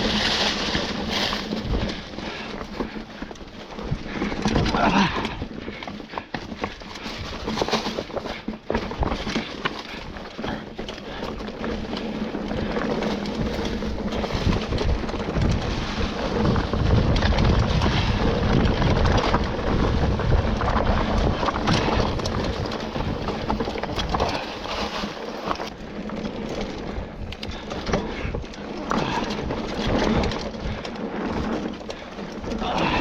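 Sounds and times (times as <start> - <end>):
bike knocks and rattles: 0.0 - 33.0
bike tyres rolling over dirt and rocks: 0.0 - 33.0
wind rumbling on microphone: 0.0 - 33.0.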